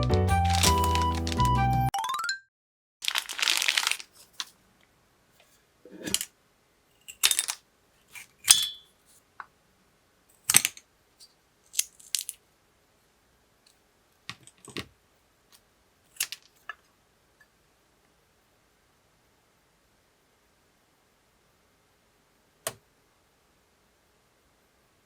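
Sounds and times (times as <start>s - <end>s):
craft items clicking and clattering: 0.3s - 2.3s, 6.0s - 6.3s.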